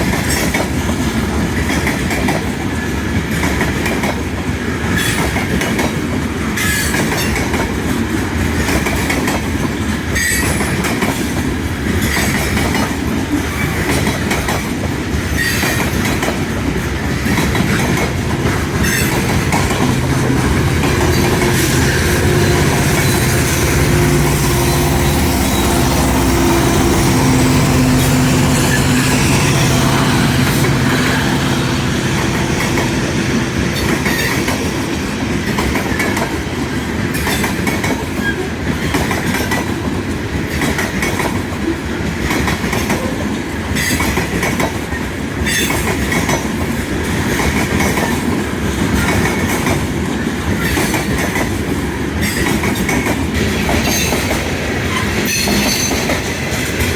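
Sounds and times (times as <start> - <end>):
freight train wheels clicking: 0.0 - 56.9
steady low drone: 17.8 - 35.9.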